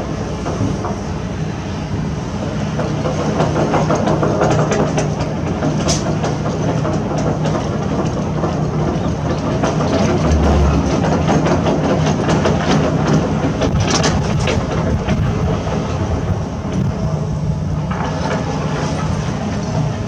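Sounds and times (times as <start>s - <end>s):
diesel engine running: 10.0s - 11.5s
deep rumble: 10.0s - 11.8s, 13.7s - 17.8s.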